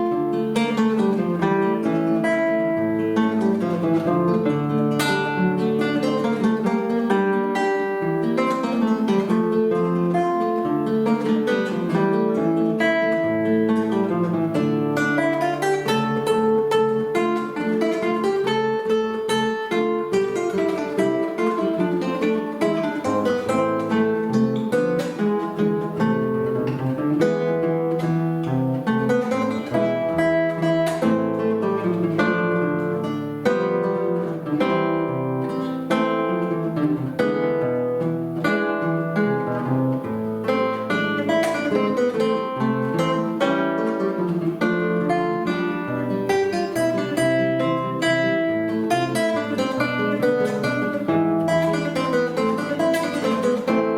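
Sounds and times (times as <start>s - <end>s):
acoustic guitar duet: 0.0s - 53.9s.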